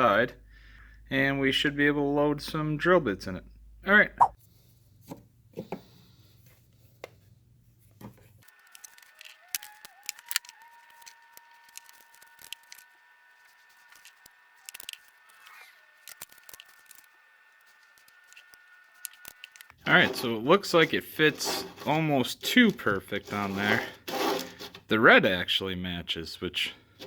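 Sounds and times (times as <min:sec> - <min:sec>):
plastic parts clicking and rustling: 0:08.1 - 0:24.9.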